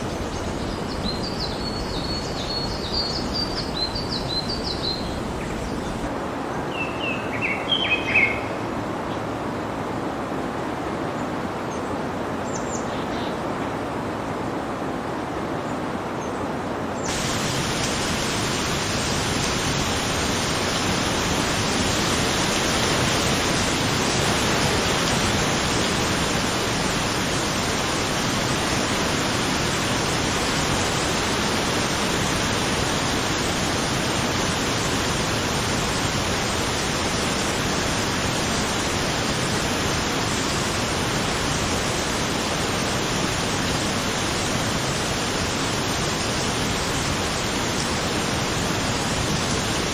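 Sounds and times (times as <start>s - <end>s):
heavy rain: 17.0s - 49.9s.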